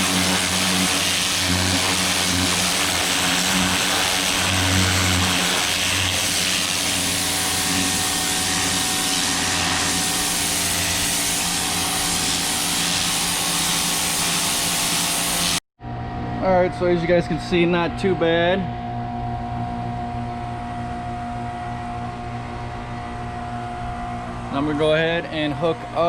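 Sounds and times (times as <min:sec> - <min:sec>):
pressure washer jet spraying: 0:00.0 - 0:15.6
electric motor and pump humming: 0:00.0 - 0:26.0.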